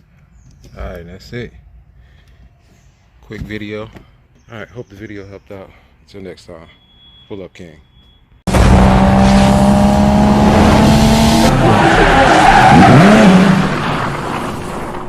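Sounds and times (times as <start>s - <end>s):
tyre squeal: 6.7s - 8.4s
car noise: 8.5s - 15.0s.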